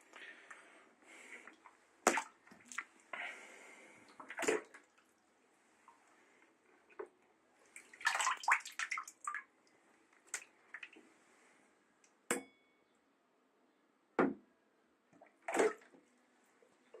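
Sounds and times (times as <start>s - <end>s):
water splashing and sloshing: 1.2s - 6.1s, 6.9s - 9.6s, 10.2s - 11.0s, 15.2s - 16.0s.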